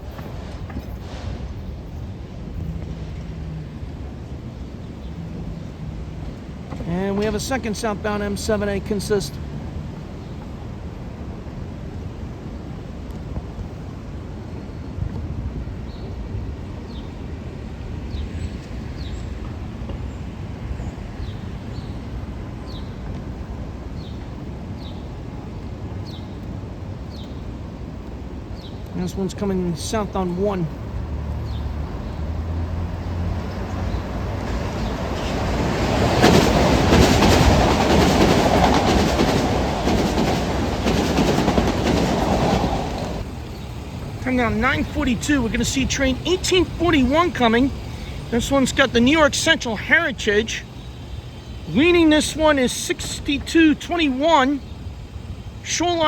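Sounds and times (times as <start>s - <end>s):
electric train rumbling past: 0.0s - 56.0s
wheels clacking over rail joints: 18.1s - 49.7s.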